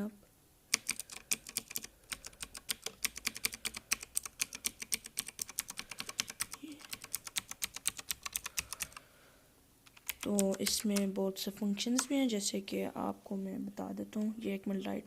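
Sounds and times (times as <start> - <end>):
fast clicky keyboard typing: 0.7 - 9.0, 9.9 - 12.2.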